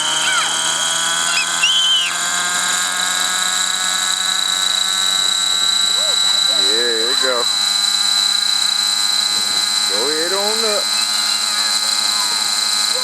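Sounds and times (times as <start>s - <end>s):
model helicopter engine whine: 0.0s - 13.0s.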